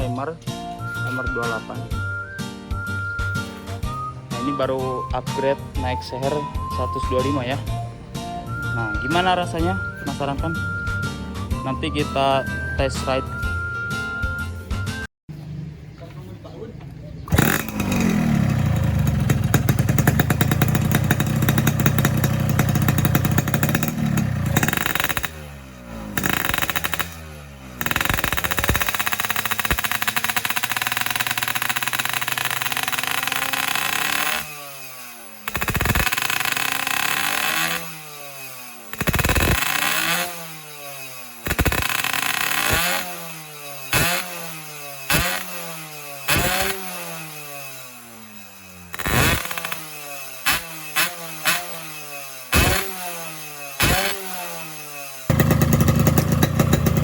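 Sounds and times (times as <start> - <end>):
two-stroke motorcycle engine revving: 17.1 - 57.0.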